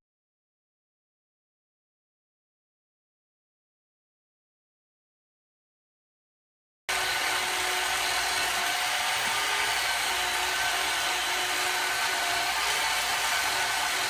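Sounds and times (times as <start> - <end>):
power tool motor running: 6.9 - 14.0.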